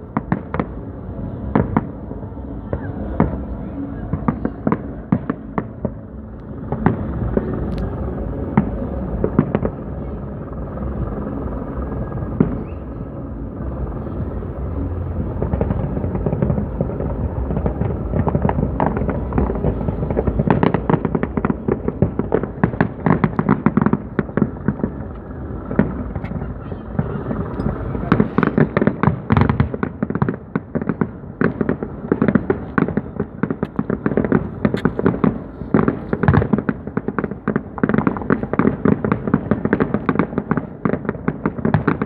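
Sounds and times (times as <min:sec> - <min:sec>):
fireworks crackle: 0:14.7 - 0:42.0
fireworks sharp bangs: 0:15.3 - 0:42.0.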